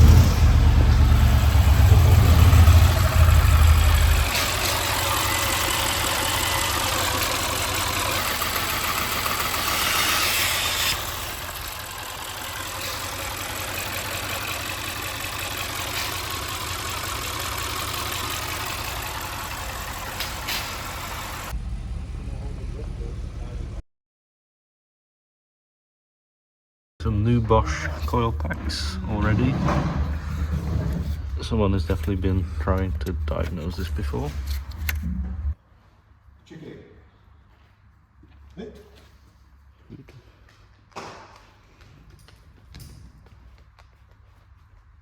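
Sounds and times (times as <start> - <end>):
car engine idling: 0.0 - 23.8, 27.0 - 35.6.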